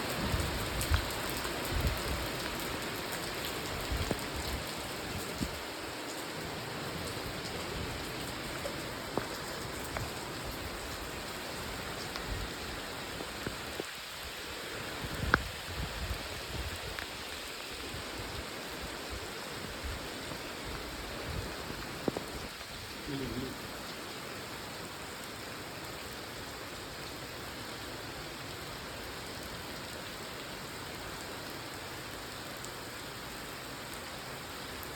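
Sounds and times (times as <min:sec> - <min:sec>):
steady rain falling: 0:00.0 - 0:34.9
water drips: 0:07.0 - 0:13.9.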